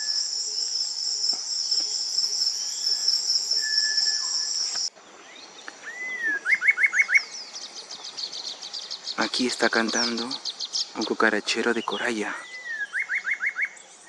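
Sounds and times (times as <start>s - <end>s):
high-pitched insect drone: 0.0s - 4.9s
long thin bird whistle: 0.0s - 4.9s, 5.8s - 7.5s, 12.4s - 14.0s
wren singing: 0.0s - 14.0s.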